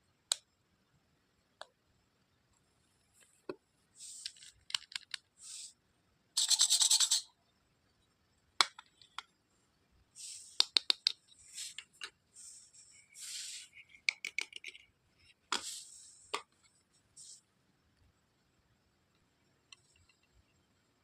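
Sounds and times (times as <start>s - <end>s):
plastic toy pieces clicking: 4.2s - 5.2s, 14.0s - 14.9s.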